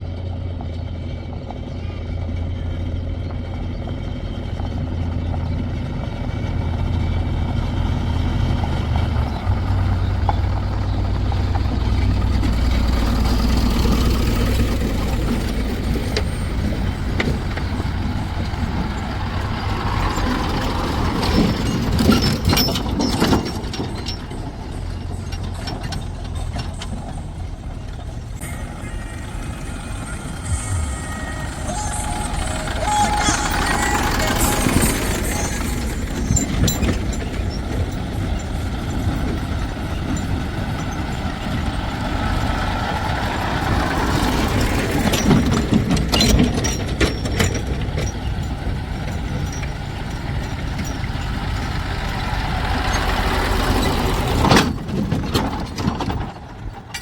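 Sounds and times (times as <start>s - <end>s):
diesel engines running: 0.0s - 57.0s.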